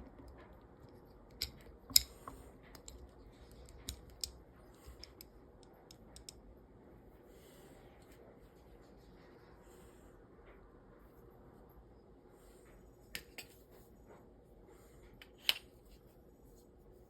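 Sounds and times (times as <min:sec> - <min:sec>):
metallic clicks of pistol parts: 0:01.3 - 0:06.4.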